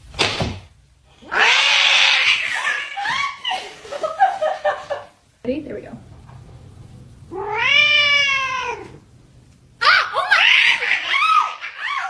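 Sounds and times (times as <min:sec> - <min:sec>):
cat meowing: 0:01.2 - 0:03.4, 0:07.3 - 0:09.0.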